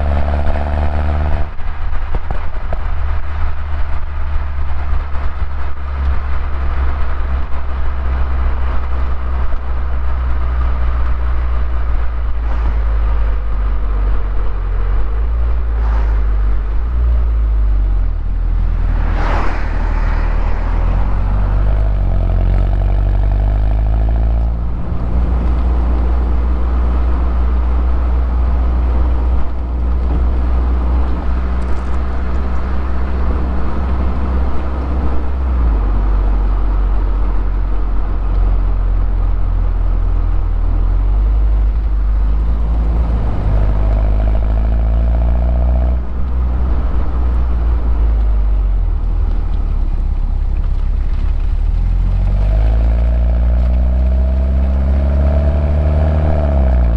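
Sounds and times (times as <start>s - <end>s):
car engine droning: 0.0s - 56.9s
loud rushing sound: 14.7s - 23.9s.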